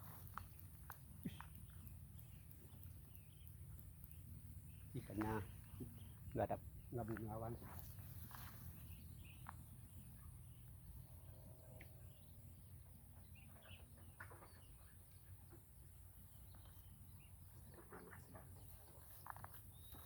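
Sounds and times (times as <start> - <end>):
distant bird calls: 0.0 - 20.0.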